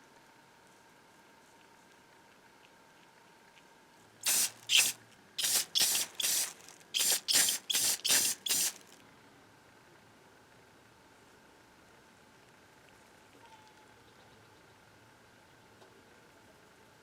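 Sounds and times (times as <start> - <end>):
aerosol spray can hissing: 4.2 - 9.0.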